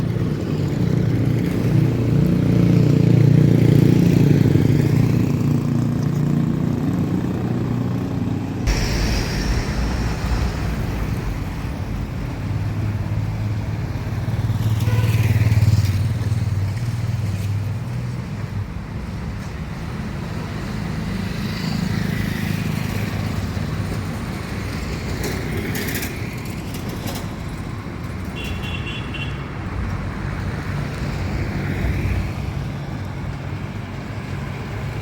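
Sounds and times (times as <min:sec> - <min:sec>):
vehicles passing: 0:08.7 - 0:18.9.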